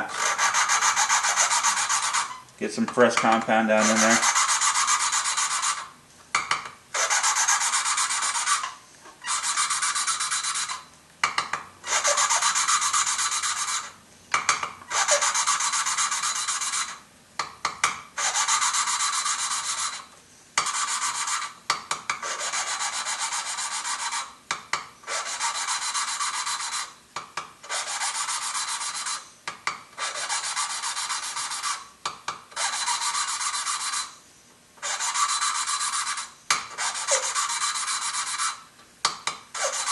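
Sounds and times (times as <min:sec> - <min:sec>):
valve grinding gritty strokes: 0:00.0 - 0:05.9, 0:06.9 - 0:10.9, 0:11.8 - 0:14.0, 0:18.2 - 0:21.6, 0:25.1 - 0:27.0, 0:27.6 - 0:29.3, 0:30.0 - 0:31.9, 0:32.6 - 0:34.2, 0:34.8 - 0:38.6, 0:39.6 - 0:39.9.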